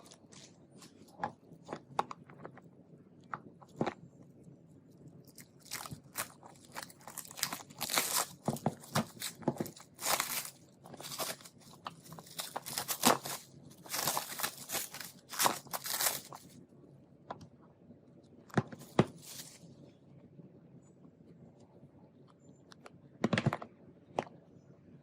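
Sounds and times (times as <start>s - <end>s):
plastic and cardboard crinkling: 0.0s - 2.6s, 5.2s - 16.6s, 18.6s - 19.6s.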